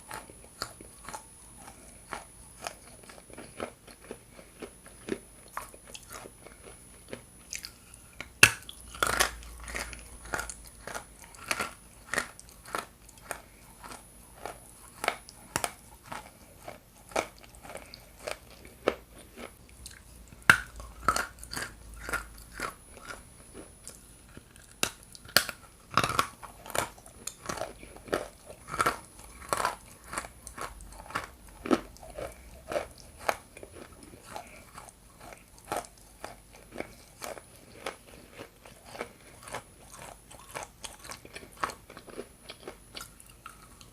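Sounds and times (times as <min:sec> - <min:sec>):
cracking bites: 0:23.9 - 0:34.5.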